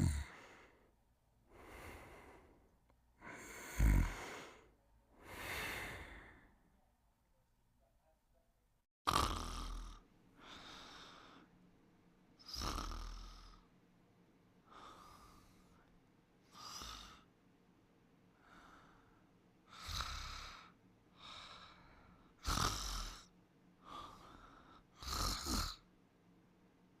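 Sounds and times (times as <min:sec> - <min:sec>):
person snoring: 0:00.0 - 0:00.7, 0:03.2 - 0:06.5, 0:09.1 - 0:11.5, 0:12.4 - 0:13.6, 0:16.5 - 0:17.3, 0:19.7 - 0:25.8.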